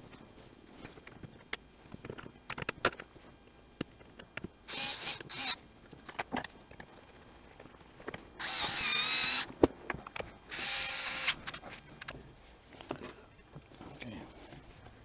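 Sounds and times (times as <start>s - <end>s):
cordless drill whining: 4.7s - 5.6s, 8.4s - 9.5s, 10.5s - 11.6s.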